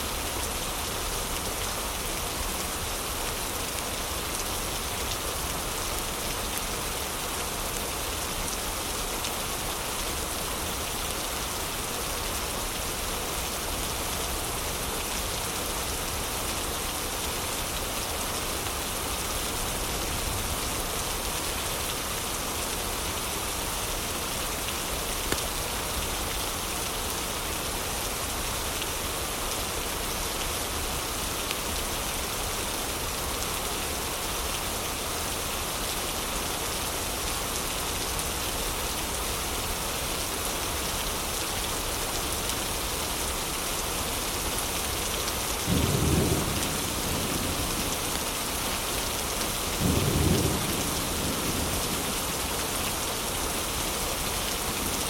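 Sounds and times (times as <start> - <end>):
heavy rain: 0.0 - 55.0
low rumbles of thunder: 45.7 - 48.2, 49.8 - 52.2.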